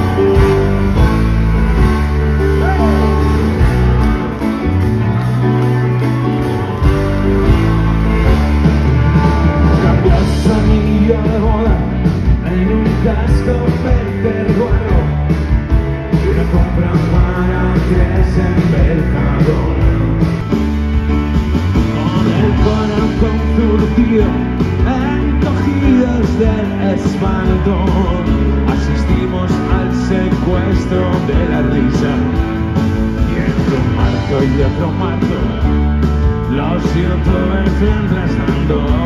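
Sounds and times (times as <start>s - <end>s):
drum beat: 0.0s - 19.1s, 19.8s - 27.6s
live rock band playing: 0.0s - 39.0s.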